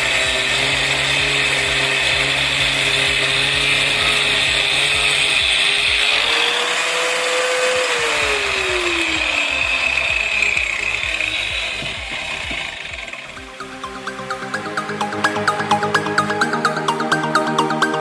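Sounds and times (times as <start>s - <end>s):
shop vacuum running: 0.0s - 13.8s
angle grinder whirring: 0.0s - 18.0s.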